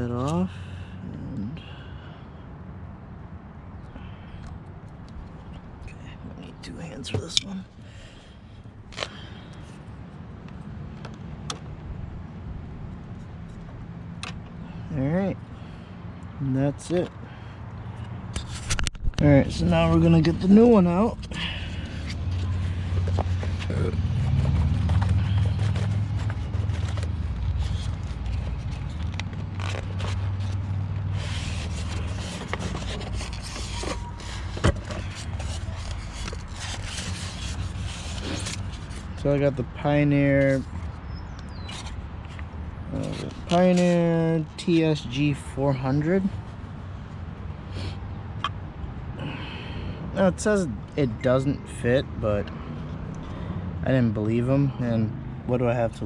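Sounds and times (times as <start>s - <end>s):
packing material rustling: 24.4s - 39.2s.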